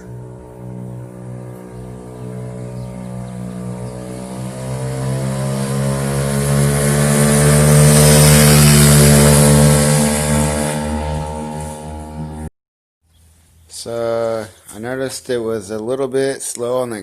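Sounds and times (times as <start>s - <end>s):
scooter engine accelerating: 0.0s - 12.5s.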